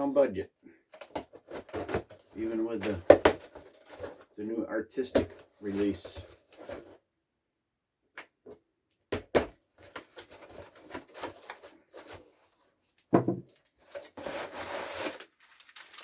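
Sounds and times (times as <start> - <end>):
packaging rustling: 0.9 - 4.4, 5.1 - 7.0, 9.8 - 12.6, 13.5 - 16.0.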